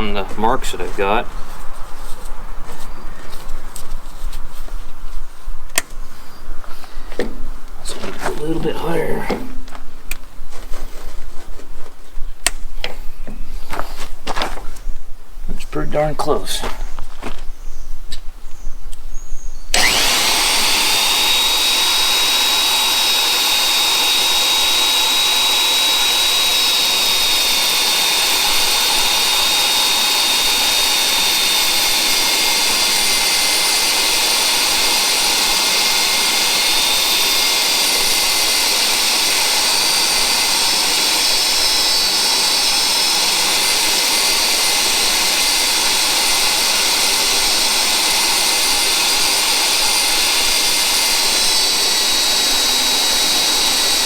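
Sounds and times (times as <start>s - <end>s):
magnetic drill motor whining: 5.8s - 11.2s, 19.7s - 54.0s.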